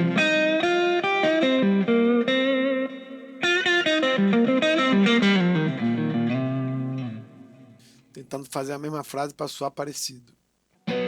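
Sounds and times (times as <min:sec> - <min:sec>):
electric guitar melody: 0:00.0 - 0:08.0, 0:10.8 - 0:11.0.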